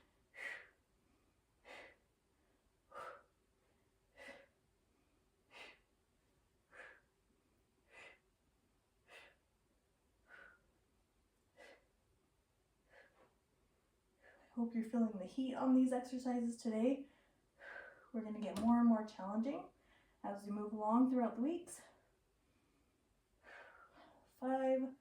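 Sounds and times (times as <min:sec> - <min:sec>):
woman breathing: 0:00.0 - 0:06.0, 0:06.6 - 0:07.2, 0:07.8 - 0:08.4, 0:09.0 - 0:09.5, 0:10.2 - 0:10.8, 0:11.4 - 0:12.0, 0:12.8 - 0:13.4, 0:14.1 - 0:14.6, 0:17.0 - 0:18.2, 0:19.7 - 0:20.2, 0:21.8 - 0:24.4.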